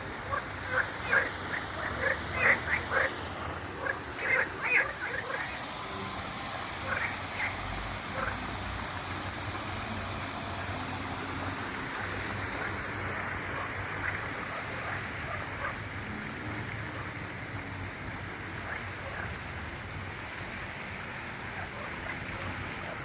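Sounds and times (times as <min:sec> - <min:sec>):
single frog calls: 0:00.3 - 0:03.2, 0:03.8 - 0:05.6
frogs calling in chorus: 0:00.3 - 0:08.4.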